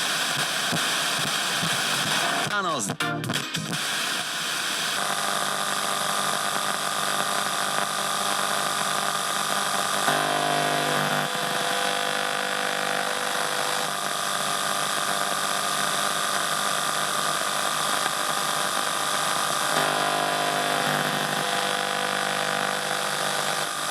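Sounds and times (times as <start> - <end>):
radio static hiss: 0.0 - 23.9.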